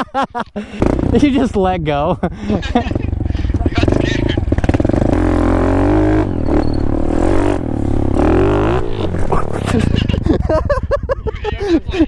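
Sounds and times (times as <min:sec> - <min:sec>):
dirt bike engine revving: 0:00.8 - 0:01.6, 0:02.5 - 0:10.5.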